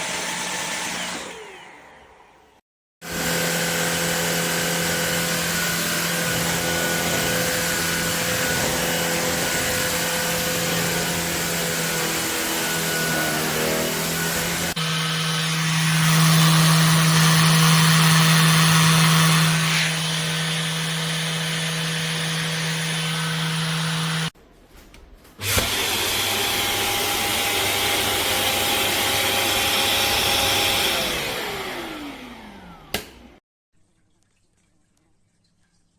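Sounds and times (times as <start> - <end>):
vacuum motor humming: 3.0 - 24.3, 25.4 - 33.4
click: 32.9 - 33.2.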